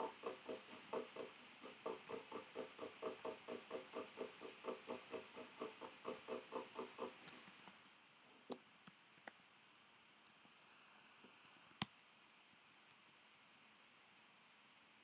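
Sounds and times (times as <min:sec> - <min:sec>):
rhythmic buzzy clicking: 0:00.0 - 0:07.6.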